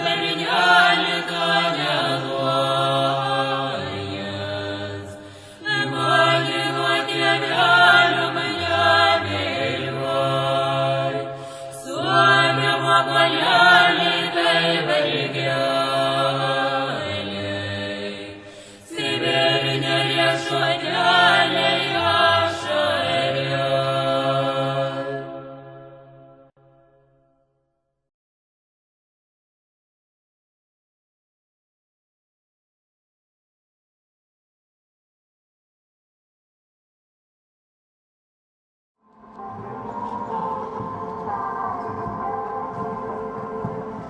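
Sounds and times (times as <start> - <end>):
voices chanting: 0.0 - 24.2, 39.1 - 44.0
low drone: 39.1 - 44.0.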